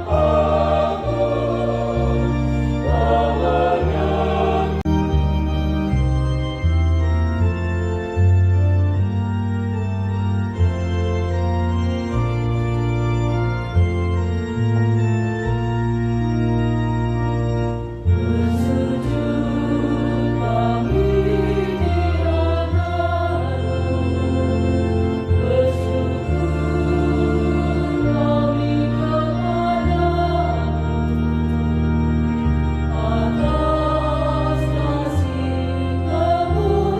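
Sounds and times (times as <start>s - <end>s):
choir singing: 0.0s - 5.3s, 18.2s - 31.2s, 32.4s - 36.9s
organ playing held chords: 0.0s - 36.9s.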